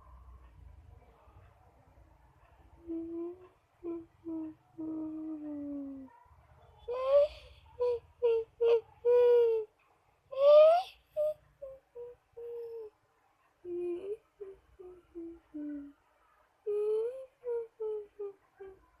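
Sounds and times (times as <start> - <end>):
whimpering humming voice: 2.4 - 6.2, 6.9 - 13.0, 13.6 - 16.0, 16.6 - 19.0.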